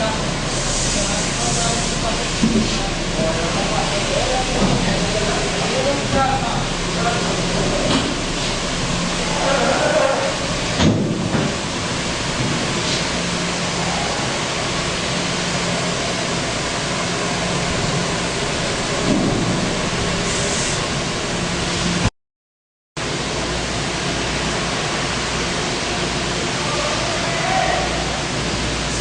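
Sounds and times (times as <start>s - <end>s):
low machine hum: 0.0s - 22.1s
water spray rushing: 0.0s - 22.1s.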